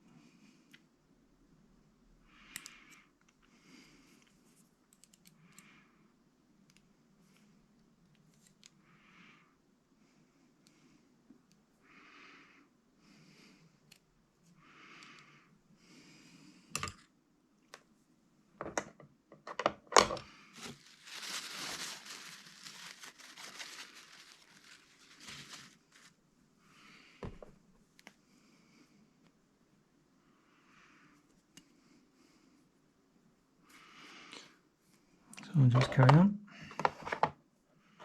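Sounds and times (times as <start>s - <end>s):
crinkling rustle: 20.5s - 26.2s.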